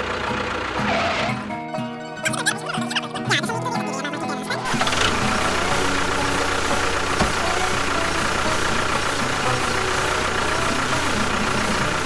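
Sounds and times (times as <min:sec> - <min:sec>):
engine running: 0:00.0 - 0:02.3, 0:03.1 - 0:12.0
steady whine: 0:04.3 - 0:12.0.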